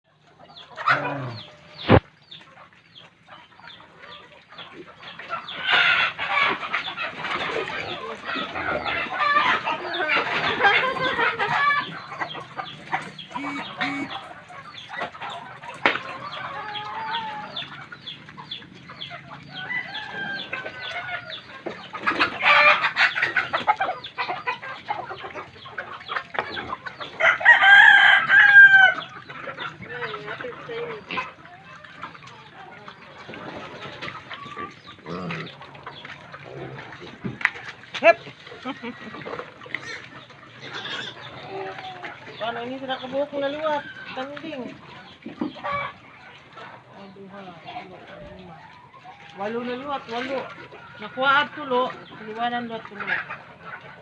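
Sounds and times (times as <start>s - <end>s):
chickens clucking: 0.1s - 54.0s
rooster crowing: 27.2s - 29.0s.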